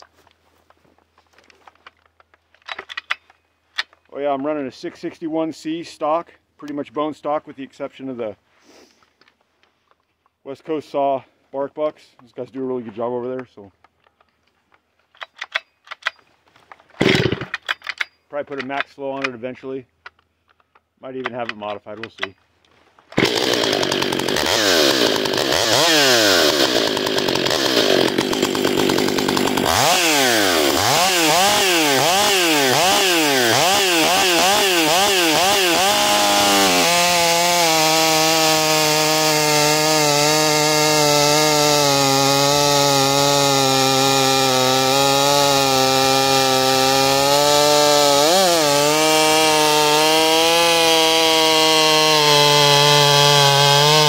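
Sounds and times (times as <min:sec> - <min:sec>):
chainsaw revving and cutting wood: 0:17.0 - 0:17.6, 0:23.2 - 0:54.0.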